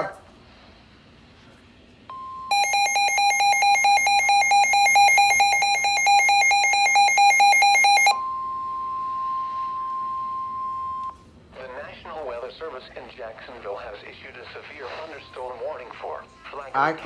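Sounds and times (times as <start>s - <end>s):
rapid electronic alarm beeping: 2.5s - 11.0s, 14.8s - 17.0s.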